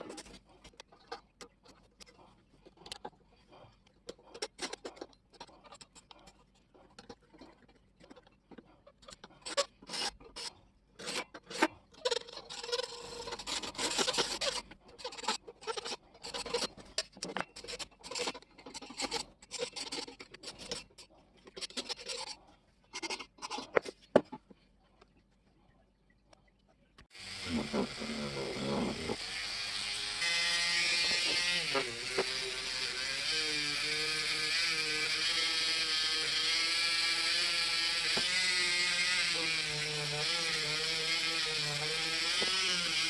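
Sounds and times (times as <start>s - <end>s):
hand sanding rasping: 27.2s - 43.0s.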